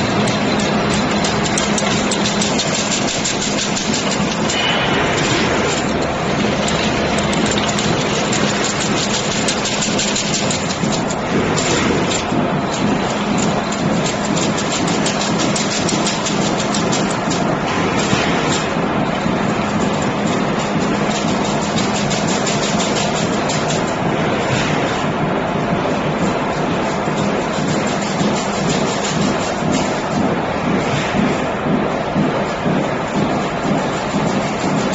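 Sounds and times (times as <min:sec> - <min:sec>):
clatter of wire and metal parts: 0:00.0 - 0:24.9, 0:26.2 - 0:30.4
steady motor hum: 0:00.0 - 0:34.9.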